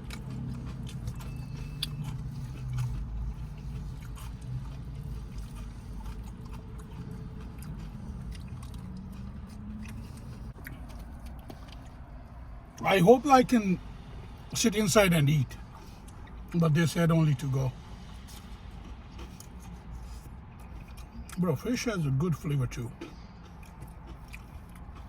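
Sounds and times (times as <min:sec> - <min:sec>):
person chewing crispy food: 0:00.0 - 0:12.5, 0:17.8 - 0:21.4, 0:22.9 - 0:25.0
steady low hum: 0:00.0 - 0:25.0.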